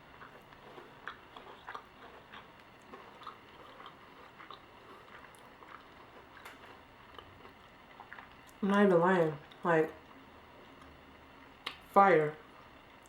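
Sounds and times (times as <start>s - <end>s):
person chewing crunchy food: 0.0s - 8.6s.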